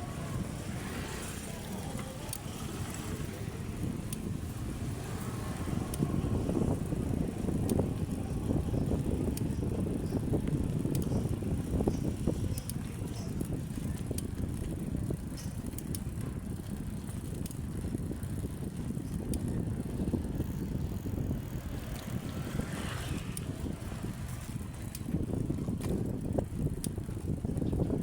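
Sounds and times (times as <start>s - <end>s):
bicycle tyres rumbling on road: 0.0s - 28.0s
light clicks and rattles: 8.9s - 18.0s.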